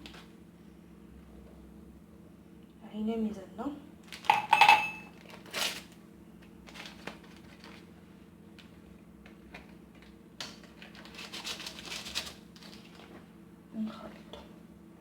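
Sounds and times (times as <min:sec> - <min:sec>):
flour rustling patter: 0:05.1 - 0:13.4.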